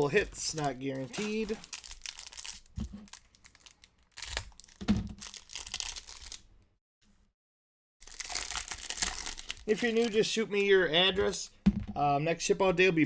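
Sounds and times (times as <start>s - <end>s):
card pack wrapper crinkling and tearing: 0.0s - 6.5s, 8.0s - 10.9s.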